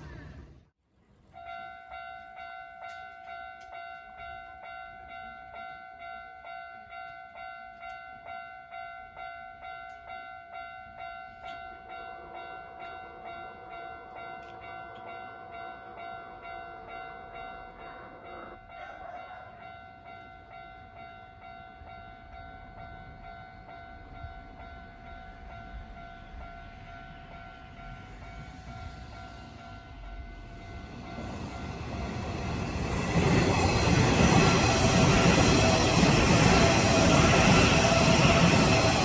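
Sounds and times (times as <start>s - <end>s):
train rumble: 0.0s - 0.7s, 9.8s - 39.0s
level crossing warning bell ringing: 1.4s - 39.0s.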